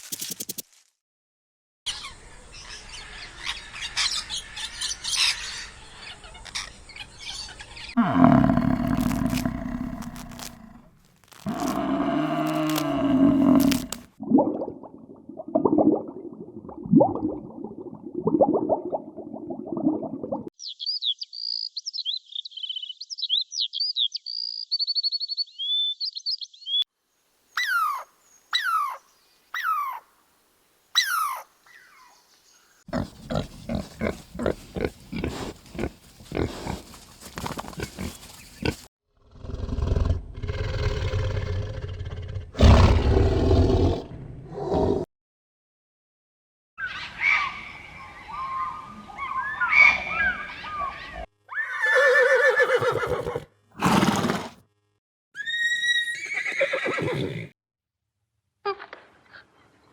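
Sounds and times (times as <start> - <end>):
animal low roar: 8.0 - 14.1, 38.6 - 45.1
low grunting calls: 8.0 - 14.1.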